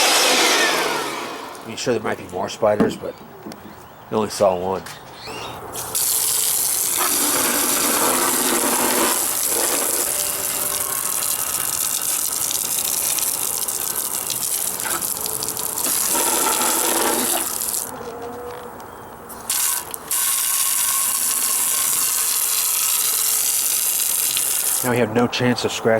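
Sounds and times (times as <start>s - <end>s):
hose spraying water on plastic: 5.8s - 17.9s, 19.3s - 25.0s.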